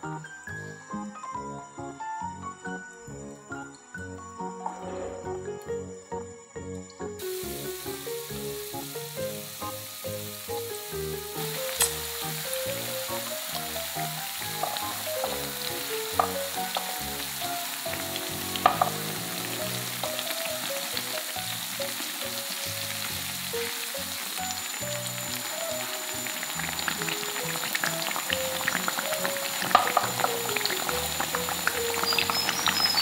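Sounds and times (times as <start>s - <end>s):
food sizzling in hot oil: 7.2s - 33.0s
oil popping: 7.2s - 33.0s.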